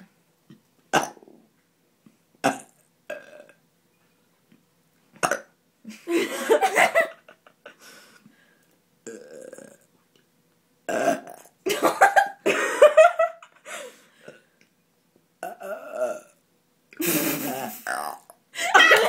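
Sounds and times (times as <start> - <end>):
person burping: 0.9 - 1.5, 2.4 - 3.6, 5.2 - 5.6, 9.0 - 9.9, 10.9 - 11.8, 15.4 - 16.4, 17.4 - 18.4.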